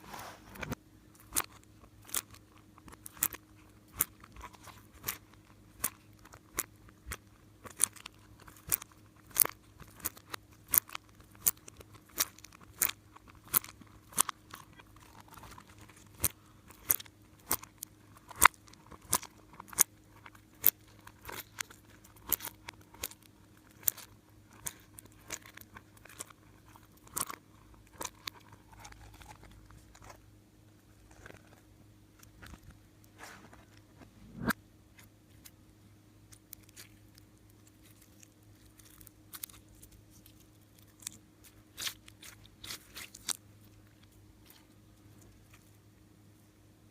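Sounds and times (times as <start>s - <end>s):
slime squeezed by hand crackling: 36.5s - 43.4s.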